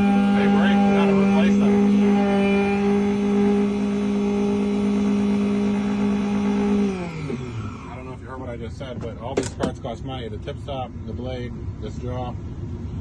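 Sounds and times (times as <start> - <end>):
electric motor humming: 0.0 - 8.5.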